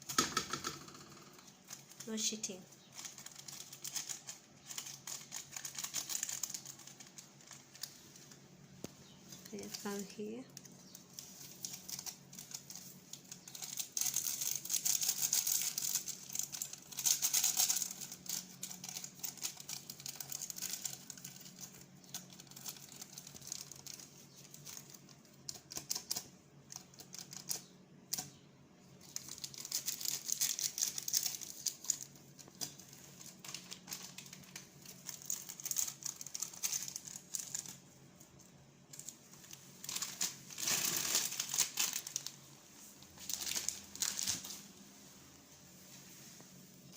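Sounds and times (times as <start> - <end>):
plastic packaging crinkling: 1.4 - 27.7, 29.0 - 44.8
packets torn open: 2.8 - 8.0, 11.5 - 27.6, 29.0 - 37.8, 39.8 - 42.4.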